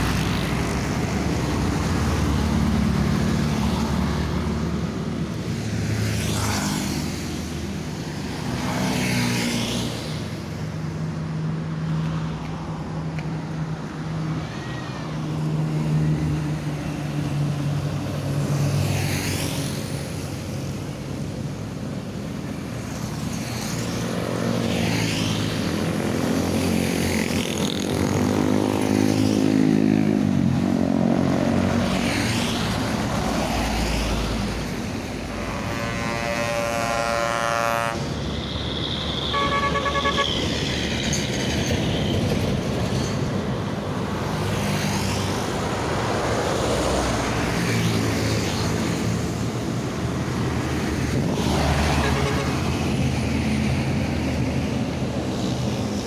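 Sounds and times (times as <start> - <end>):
heavy road traffic: 0.0 - 56.0
short horn toots: 35.2 - 38.0, 39.3 - 40.5
vehicle air horn: 35.2 - 38.2, 39.1 - 40.6, 52.0 - 52.6.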